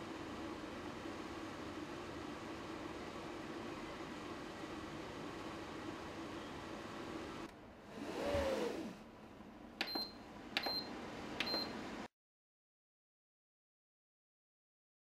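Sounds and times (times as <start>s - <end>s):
dehumidifier fan running: 0.0s - 12.1s
short electronic beeps: 9.8s - 11.7s.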